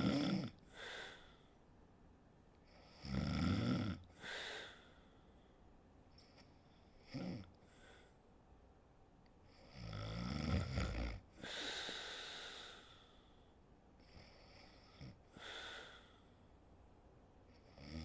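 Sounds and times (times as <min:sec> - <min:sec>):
woman snoring: 0:00.0 - 0:00.9, 0:02.9 - 0:04.0, 0:09.7 - 0:12.2
breathy breaths: 0:00.0 - 0:01.7, 0:04.1 - 0:07.0, 0:11.4 - 0:16.6.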